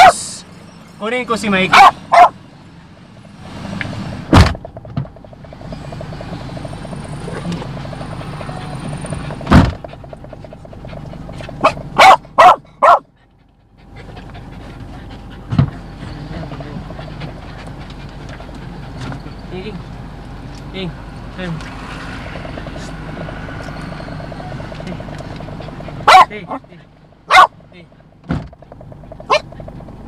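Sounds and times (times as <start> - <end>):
dog barking: 0.0 - 0.2, 1.7 - 2.4, 11.5 - 13.1, 26.0 - 26.6, 27.3 - 27.6, 29.2 - 29.6
steady low hum: 1.5 - 30.0.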